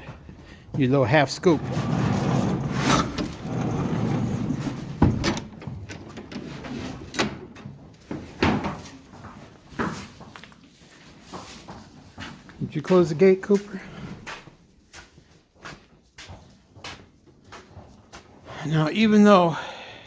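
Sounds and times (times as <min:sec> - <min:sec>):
rumbling scuffle: 0:00.8 - 0:12.8.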